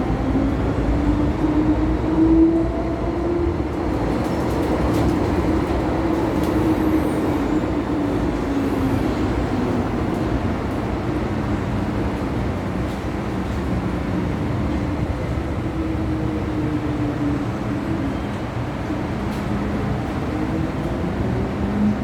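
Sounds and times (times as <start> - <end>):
metro train rumble and whine: 0.0 - 22.0.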